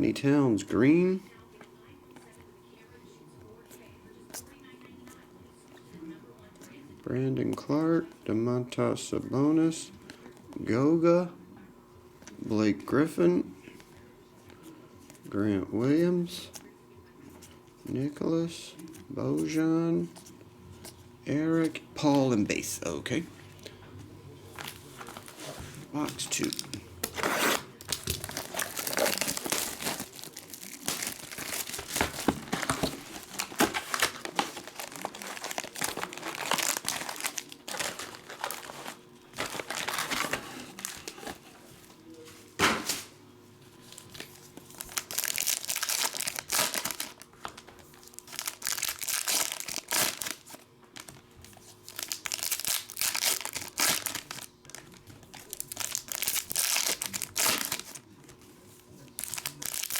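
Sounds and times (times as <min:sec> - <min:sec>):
plastic wrappers crinkling and tearing: 0:24.6 - 0:41.6, 0:43.8 - 0:59.9.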